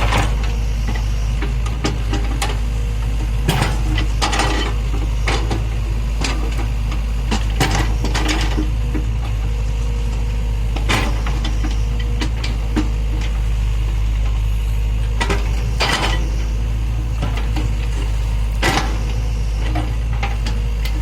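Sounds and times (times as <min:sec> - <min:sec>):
heavy diesel engine running: 0:00.0 - 0:21.0
excavator bucket clanking: 0:03.4 - 0:09.2, 0:10.2 - 0:14.5, 0:15.1 - 0:21.0.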